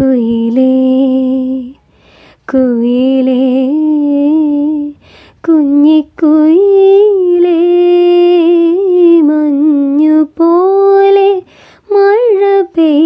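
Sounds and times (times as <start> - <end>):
intake of breath: 1.8 - 2.5, 5.0 - 5.4, 11.4 - 11.9.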